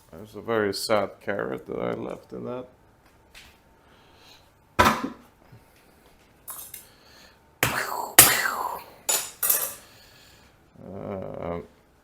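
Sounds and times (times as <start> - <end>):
kitchen utensils and pans clattering: 9.1 - 9.9.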